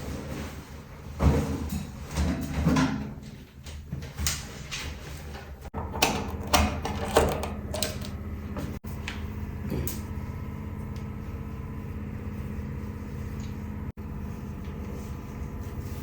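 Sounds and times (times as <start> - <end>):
doors or drawers moving: 4.3 - 8.8.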